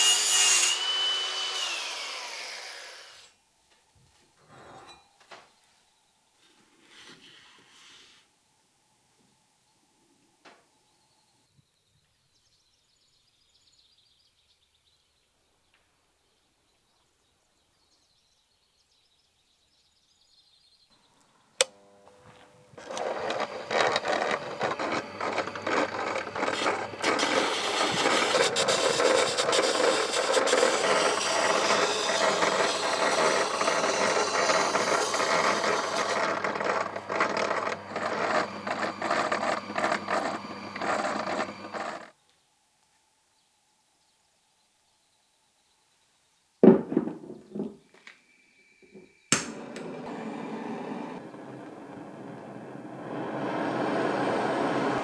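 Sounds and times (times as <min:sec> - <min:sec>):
power tool grinding: 0:00.0 - 0:03.3, 0:22.2 - 0:42.1, 0:49.4 - 0:55.0.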